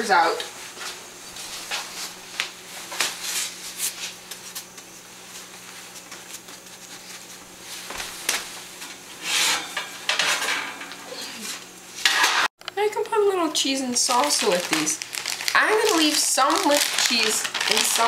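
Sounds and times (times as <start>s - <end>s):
metal baking tray clattering: 9.5s - 11.0s.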